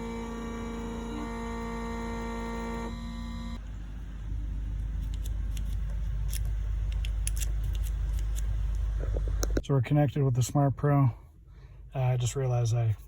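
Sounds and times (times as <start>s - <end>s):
intro music with held tones: 0.0s - 3.6s.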